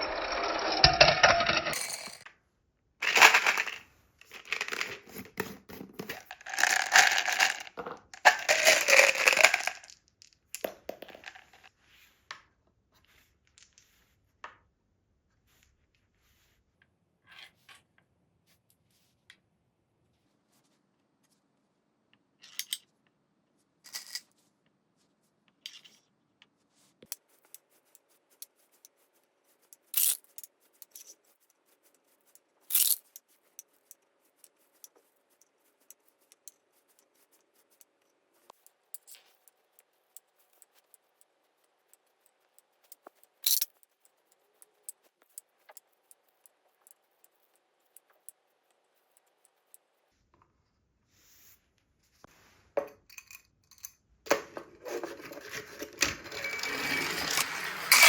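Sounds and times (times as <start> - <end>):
marbles rolling and clicking: 0.0 - 2.2, 3.0 - 10.0, 10.6 - 11.7, 30.0 - 30.3, 32.7 - 33.2, 42.8 - 43.8, 55.5 - 58.0.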